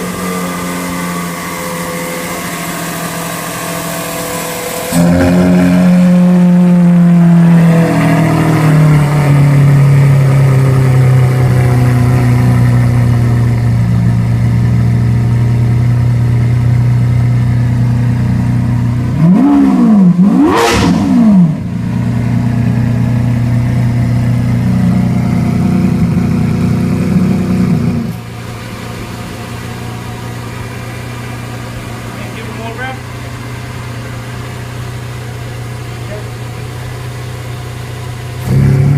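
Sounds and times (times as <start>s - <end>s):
engine revving: 0.0s - 13.6s, 18.0s - 28.3s, 38.3s - 38.9s
car engine idling: 0.0s - 38.9s.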